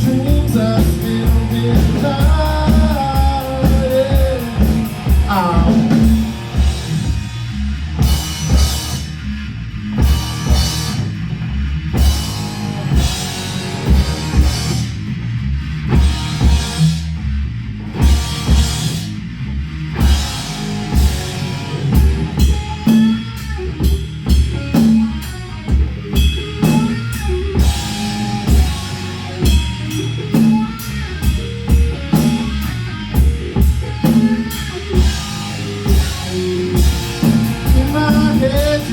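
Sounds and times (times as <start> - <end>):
drum kick beat: 0.0 - 7.4, 33.2 - 38.9
rock band playing: 0.0 - 38.9.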